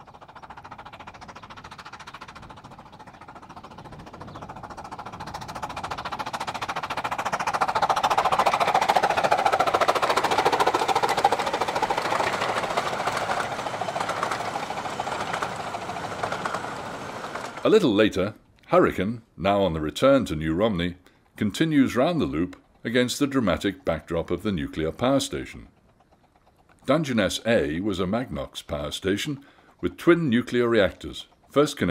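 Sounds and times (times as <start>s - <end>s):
steam locomotive exhaust beats: 0.0s - 17.8s
train wheel noise: 0.0s - 17.9s.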